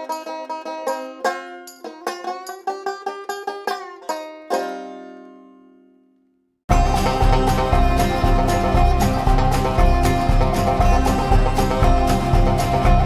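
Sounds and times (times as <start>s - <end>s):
banjo picking: 0.0s - 5.9s, 6.7s - 13.0s
full band playing: 6.7s - 13.0s.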